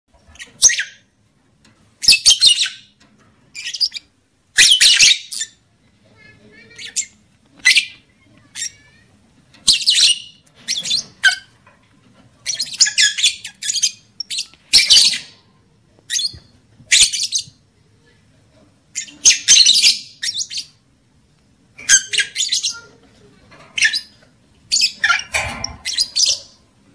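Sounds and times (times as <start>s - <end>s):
lovebirds chirping and squawking: 0.1s - 17.6s, 18.9s - 21.1s, 21.7s - 26.8s
chattering bird trills: 21.8s - 26.6s.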